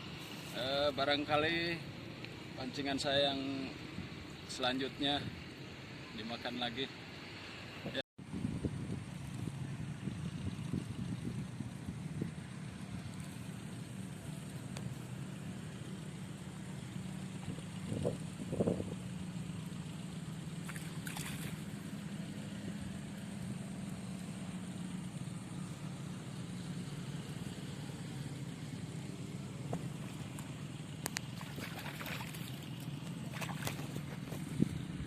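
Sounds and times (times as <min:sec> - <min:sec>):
low motor hum: 0:07.0 - 0:35.0
rustles and clicks: 0:29.6 - 0:34.8.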